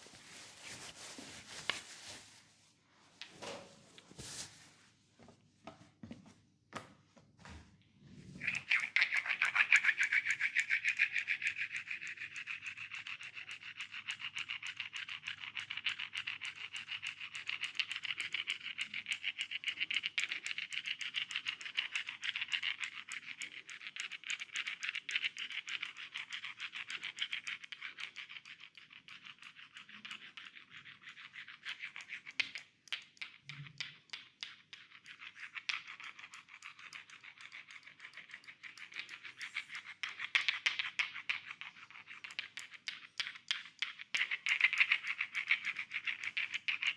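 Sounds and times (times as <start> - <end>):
hands scratching over hair and skin: 0.0 - 2.8, 3.9 - 4.8.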